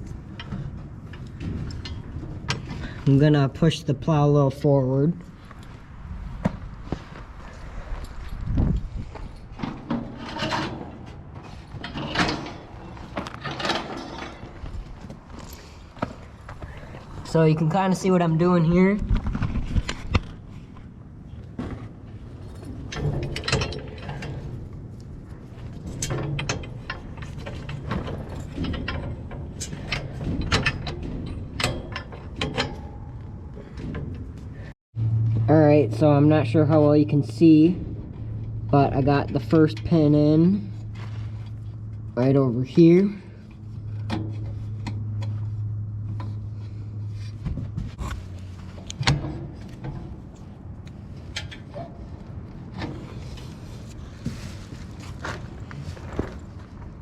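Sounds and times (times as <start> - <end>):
metal clicks and clanks: 0.0 - 3.1, 8.0 - 17.4, 21.5 - 34.8, 43.4 - 46.5, 47.1 - 54.0
low steady hum: 0.0 - 57.0
low motor hum: 32.7 - 51.3.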